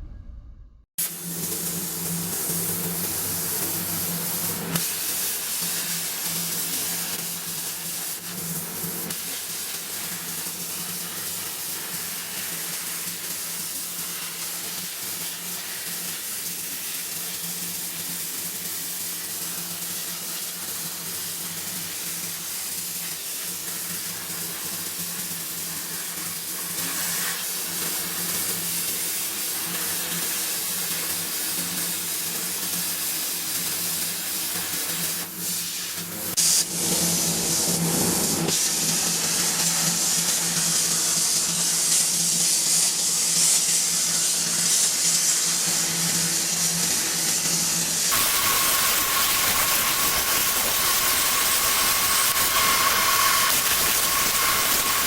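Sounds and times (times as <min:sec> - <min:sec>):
low hum: 0:00.0 - 0:00.9
steady hiss: 0:01.0 - 0:55.0.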